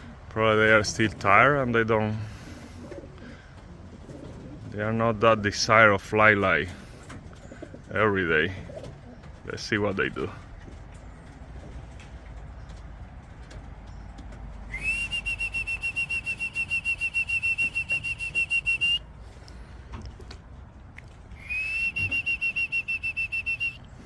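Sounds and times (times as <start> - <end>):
whistle trilling blasts: 14.7 - 19.0, 21.4 - 23.8.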